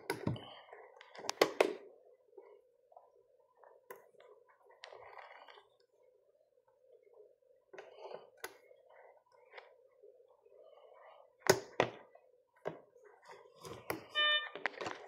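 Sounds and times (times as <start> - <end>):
short electronic beep: 14.1 - 14.6.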